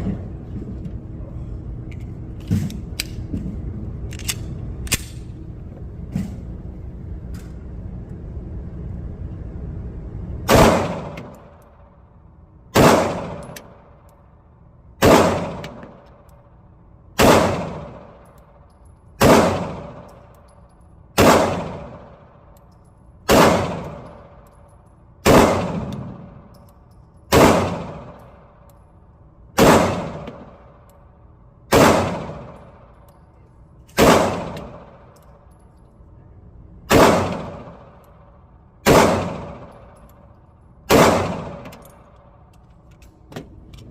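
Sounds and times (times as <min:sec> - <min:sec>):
pistol shots: 0:10.5 - 0:11.6, 0:12.7 - 0:14.0, 0:15.0 - 0:16.1, 0:17.2 - 0:18.3, 0:19.2 - 0:20.2, 0:21.2 - 0:22.4, 0:23.3 - 0:24.4, 0:25.2 - 0:26.5, 0:27.3 - 0:28.7, 0:29.6 - 0:30.9, 0:31.7 - 0:33.1, 0:33.9 - 0:35.2, 0:36.9 - 0:40.0, 0:40.8 - 0:42.1.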